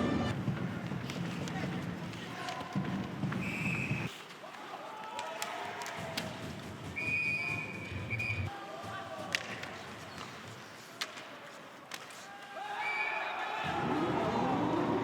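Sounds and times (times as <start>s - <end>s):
whistle blown: 3.4s - 4.1s, 7.0s - 8.5s
stick hitting puck: 9.3s - 11.3s.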